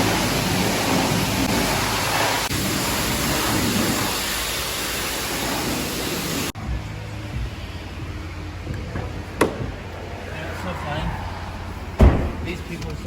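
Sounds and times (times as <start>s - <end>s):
pressure washer spraying water: 0.0s - 6.6s.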